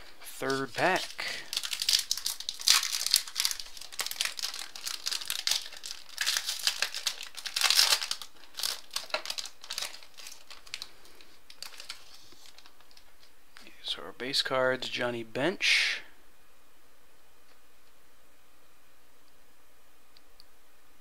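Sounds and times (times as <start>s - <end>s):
card pack wrapper crinkling: 0.4s - 13.3s.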